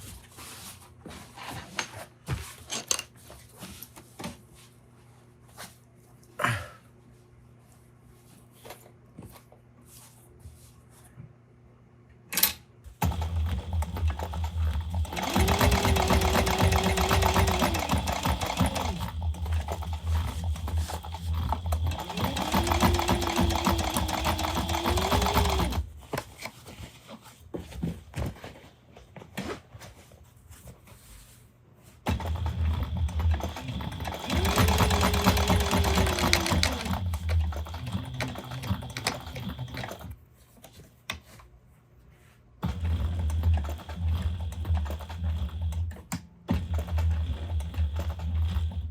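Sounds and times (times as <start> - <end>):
sewing machine stitching: 13.0 - 25.9, 32.1 - 40.2, 42.6 - 48.9.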